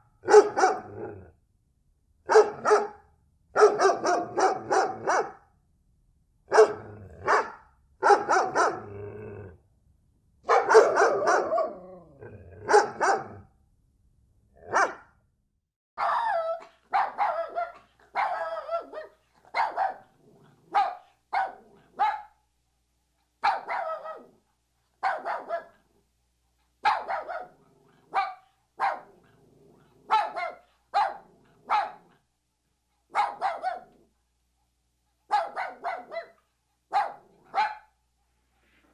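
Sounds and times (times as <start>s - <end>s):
dogs barking: 0.2s - 1.2s, 2.3s - 3.0s, 3.6s - 5.4s, 6.5s - 9.0s, 10.5s - 12.0s, 12.6s - 13.4s, 14.6s - 15.1s, 16.0s - 22.4s, 23.4s - 24.4s, 25.0s - 25.8s, 26.8s - 29.3s, 30.0s - 32.2s, 33.1s - 34.0s, 35.3s - 37.9s
dog growling: 0.7s - 1.3s, 8.5s - 9.6s, 11.5s - 12.9s, 18.7s - 20.8s, 29.0s - 30.2s.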